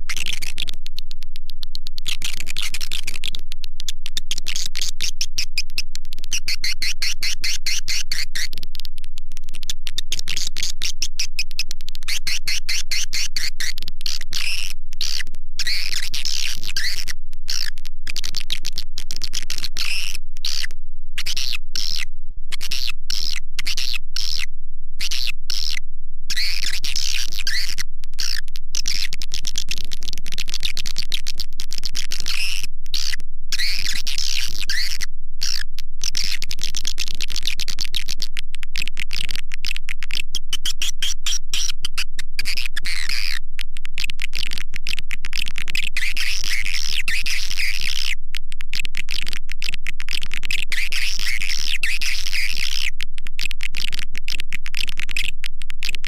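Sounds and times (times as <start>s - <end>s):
steady low hum: 0.0s - 56.0s
swiftlets twittering and chirping: 19.2s - 29.0s.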